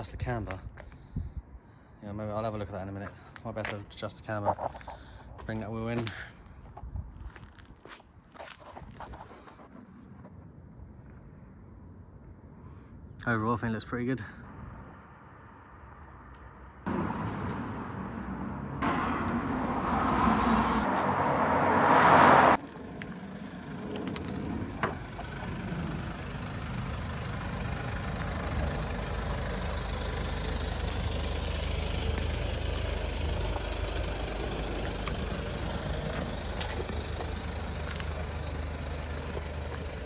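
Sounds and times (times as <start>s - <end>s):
van engine running: 22.5s - 40.0s.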